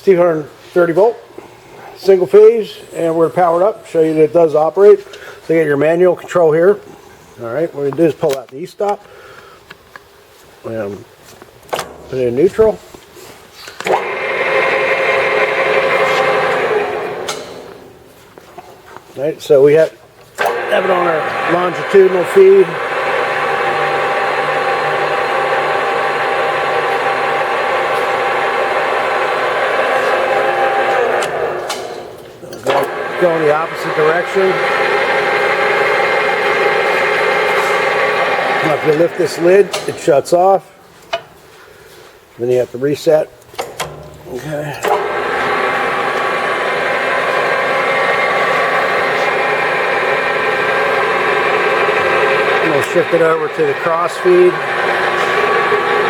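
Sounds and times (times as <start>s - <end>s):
lathe gears whining: 13.8s - 17.9s, 20.4s - 40.1s, 43.8s - 56.0s.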